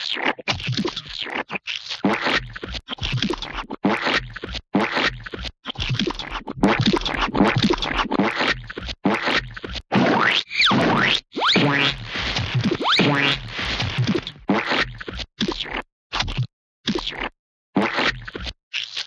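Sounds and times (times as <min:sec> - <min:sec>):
gooey splat sound effects: 0:04.8 - 0:16.4.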